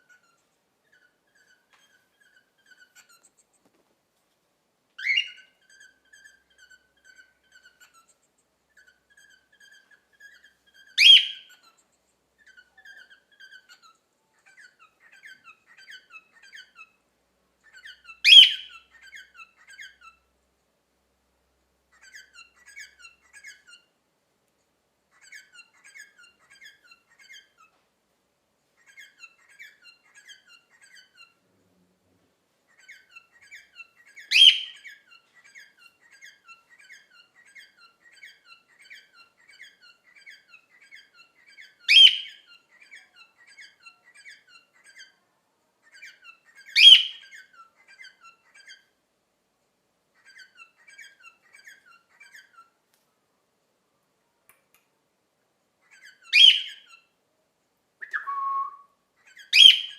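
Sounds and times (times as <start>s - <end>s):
cockatiel chirping: 0.0s - 3.8s, 5.0s - 17.0s, 17.6s - 20.3s, 21.9s - 24.0s, 25.1s - 27.8s, 28.7s - 31.4s, 32.7s - 49.0s, 50.1s - 52.8s, 55.8s - 57.2s, 58.0s - 59.9s
cockatiel loud sharp calls: 0.0s - 3.8s, 5.0s - 11.8s, 12.4s - 17.0s, 17.6s - 20.3s, 21.9s - 24.0s, 25.1s - 27.8s, 28.8s - 31.4s, 32.7s - 45.2s, 45.8s - 48.9s, 55.8s - 57.1s, 59.2s - 59.9s.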